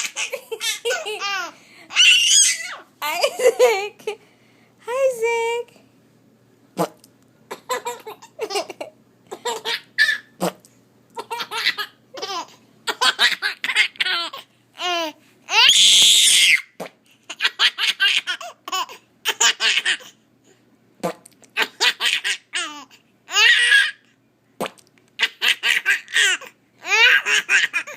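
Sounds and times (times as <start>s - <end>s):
baby laughing: 0.0s - 4.2s, 7.5s - 10.5s, 11.2s - 15.6s, 17.3s - 20.1s, 21.5s - 24.0s, 25.2s - 27.9s.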